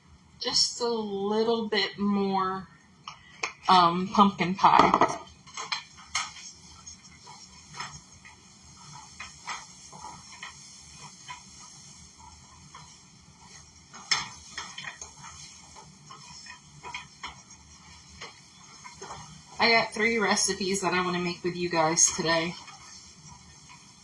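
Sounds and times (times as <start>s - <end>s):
spatula stirring nuts in pan: 4.9s - 24.0s.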